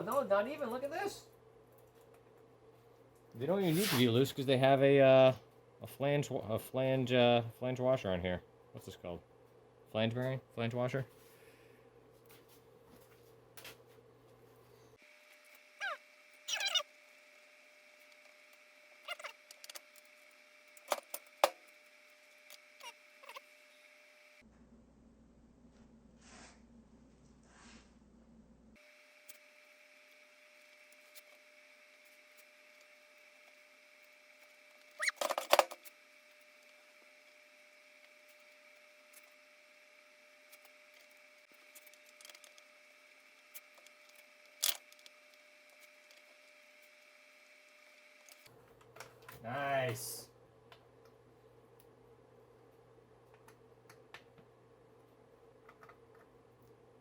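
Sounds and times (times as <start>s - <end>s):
faint steady hum: 0.0s - 57.0s
short squeaks: 15.8s - 16.9s, 19.0s - 19.8s, 34.9s - 35.9s.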